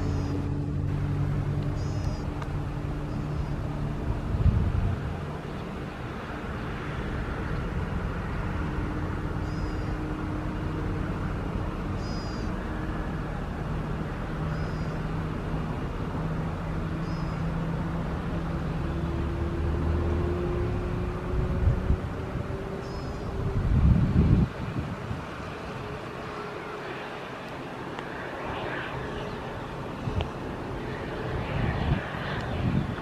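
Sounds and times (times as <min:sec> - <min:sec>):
jet engines humming: 0:00.0 - 0:33.0.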